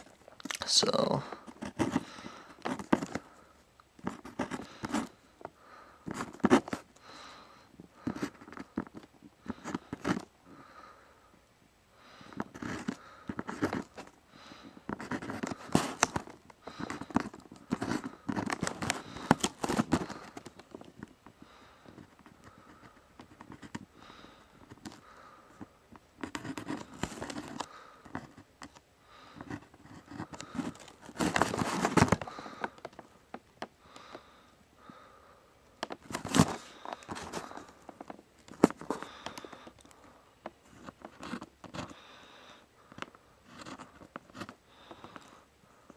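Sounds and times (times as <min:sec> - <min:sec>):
pencil scratching on paper: 0:14.9 - 0:16.0.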